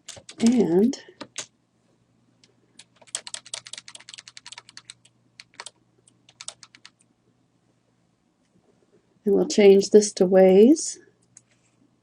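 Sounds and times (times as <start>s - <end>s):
typing on computer keyboard: 0.0s - 1.5s, 2.8s - 7.0s.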